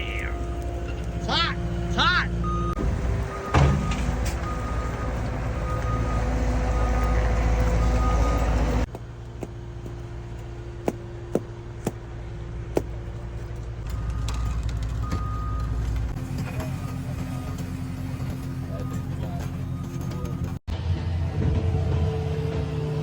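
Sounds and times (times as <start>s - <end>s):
backup alarm beeping: 0.0s - 8.8s
heavy diesel engine running: 0.0s - 23.0s.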